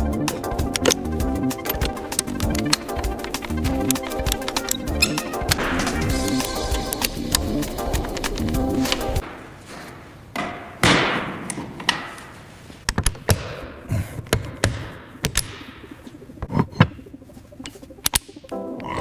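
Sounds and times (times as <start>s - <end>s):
background music: 0.0s - 9.3s, 14.6s - 19.0s
knocks and thumps of assembly work: 1.6s - 15.7s
hissing burst: 5.2s - 9.2s.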